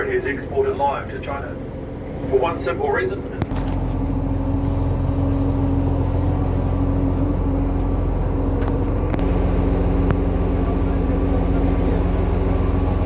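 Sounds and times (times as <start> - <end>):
boat engine humming: 0.0 - 13.0.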